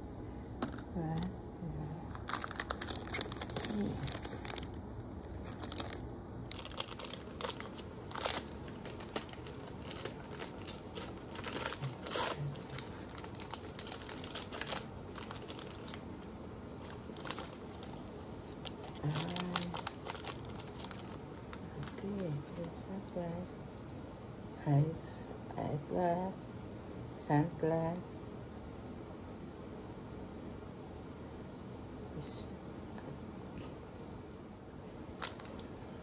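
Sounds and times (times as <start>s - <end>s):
plastic packaging crinkling and tearing: 2.1s - 16.1s, 16.8s - 22.7s, 35.2s - 35.7s.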